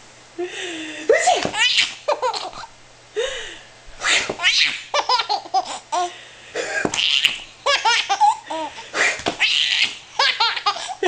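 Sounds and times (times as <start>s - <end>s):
woman pretend sneezing: 1.1s - 2.0s, 4.0s - 4.4s
baby belly-laughing: 1.2s - 2.7s, 4.2s - 6.1s, 6.8s - 11.0s.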